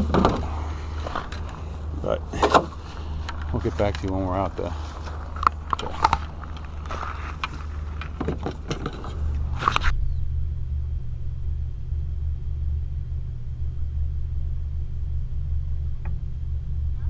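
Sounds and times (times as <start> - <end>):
handling knocks: 0.0 - 1.5
car cabin road rumble: 0.0 - 17.0.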